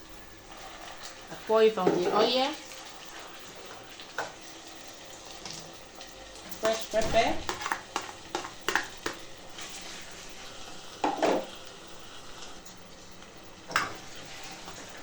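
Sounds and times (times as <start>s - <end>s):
egg sizzling in oil: 0.0s - 15.0s
spoon scraping and knocking pot: 7.4s - 9.7s, 11.0s - 11.5s.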